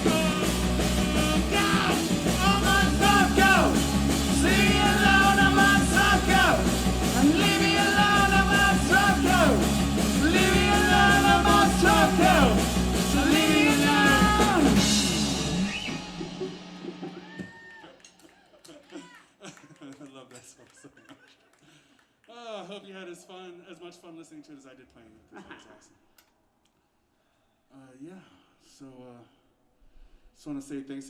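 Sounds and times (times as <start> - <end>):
live rock band playing: 0.0 - 17.2
person singing: 0.0 - 18.0.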